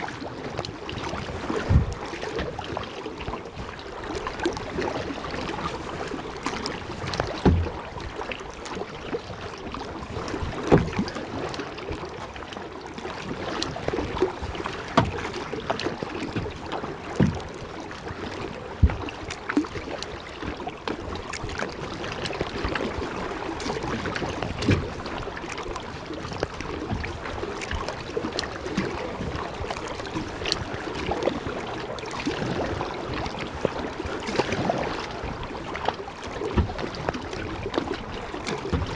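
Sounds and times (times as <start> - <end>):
kayak paddle splashing: 0.0 - 38.9
wind: 0.0 - 38.9
water washing: 3.5 - 12.1, 13.0 - 38.9.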